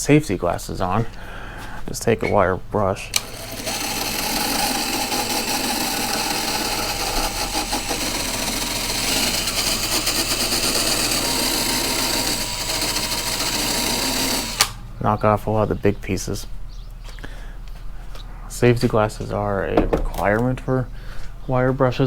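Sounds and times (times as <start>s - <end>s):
wire brush scouring metal shaft: 3.1s - 14.8s.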